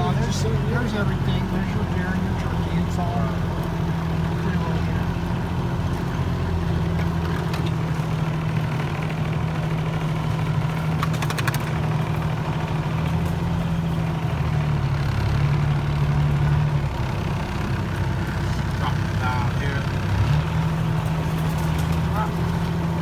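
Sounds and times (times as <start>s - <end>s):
vehicle engine running: 0.0s - 23.0s
rattle of clicks: 10.7s - 12.1s.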